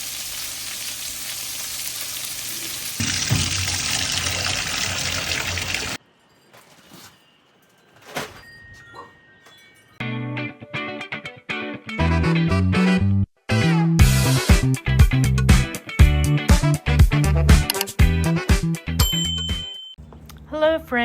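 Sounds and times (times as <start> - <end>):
meatballs sizzling in a frying pan: 0.0 - 6.0
faint wind chimes ringing: 6.0 - 10.0.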